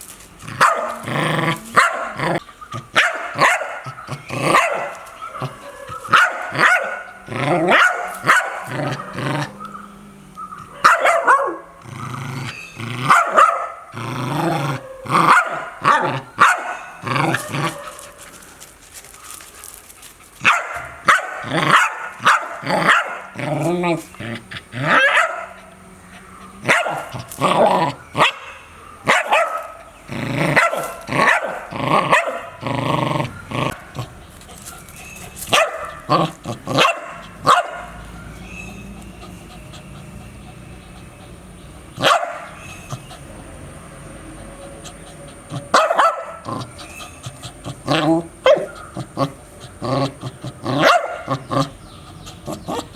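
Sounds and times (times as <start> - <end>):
dog barking: 0.5 - 1.1, 1.8 - 2.3, 2.9 - 11.7, 13.0 - 13.9, 14.8 - 18.3, 20.4 - 23.4, 24.8 - 25.7, 26.6 - 29.8, 30.5 - 32.6, 35.5 - 38.9, 42.0 - 42.6, 45.5 - 46.7, 47.9 - 51.7.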